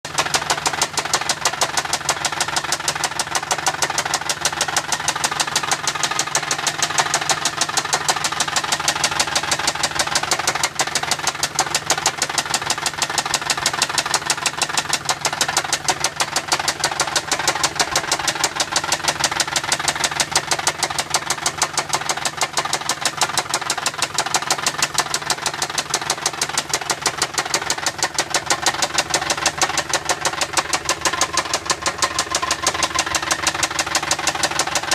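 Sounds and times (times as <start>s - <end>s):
car engine running: 0.0s - 34.9s
rapid valvetrain ticking: 0.1s - 34.9s.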